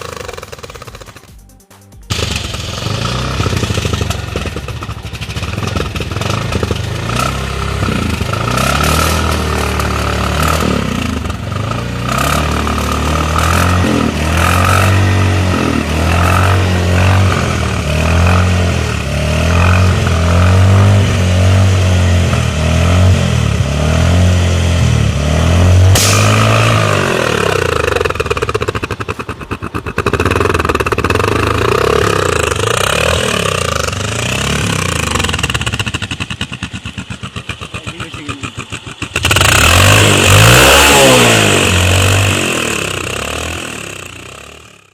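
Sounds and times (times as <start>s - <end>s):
motorcycle engine revving: 0.0s - 1.5s, 2.1s - 44.9s
motorcycle engine idling: 0.0s - 44.9s
balloon bursting pop: 25.9s - 26.8s.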